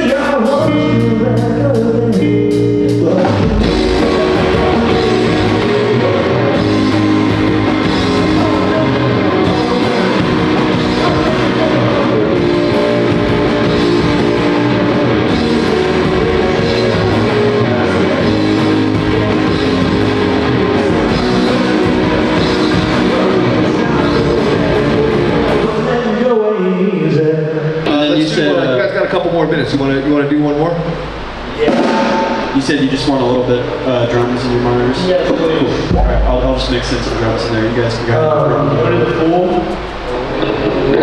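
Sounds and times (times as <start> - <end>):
drum kit: 0.0 - 26.1, 31.0 - 41.0
electric guitars: 0.0 - 26.3, 30.9 - 41.0
person singing: 0.0 - 27.8.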